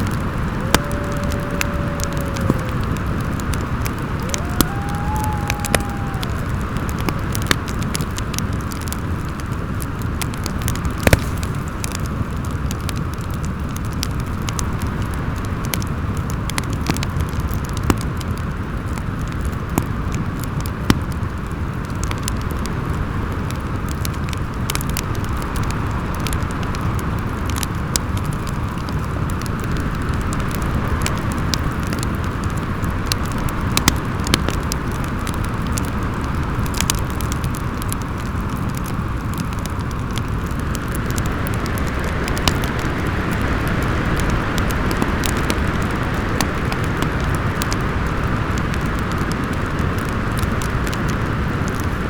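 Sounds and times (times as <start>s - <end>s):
howling storm wind: 0.0s - 17.8s, 28.2s - 52.0s
fireplace crackling and popping: 0.0s - 22.6s, 27.4s - 52.0s.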